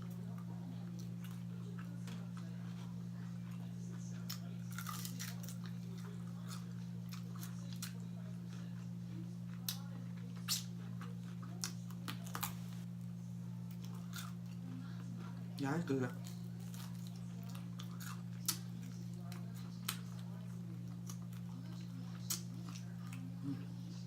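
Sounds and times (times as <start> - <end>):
steady low hum: 0.0 - 24.0
person crunching fried food: 4.2 - 8.0, 9.5 - 12.8, 13.7 - 14.6, 16.2 - 20.3.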